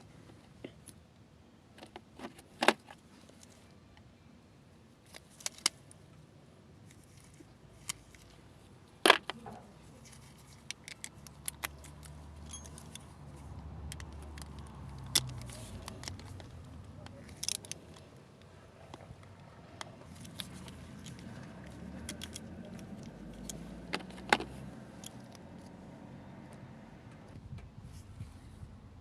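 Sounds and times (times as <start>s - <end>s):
metal tools clinking: 11.9s - 13.1s.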